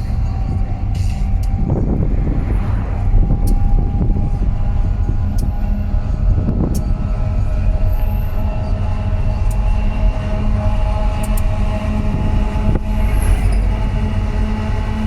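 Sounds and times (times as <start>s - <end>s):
low locomotive rumble: 0.0s - 15.0s
brief rush of noise: 1.6s - 4.5s.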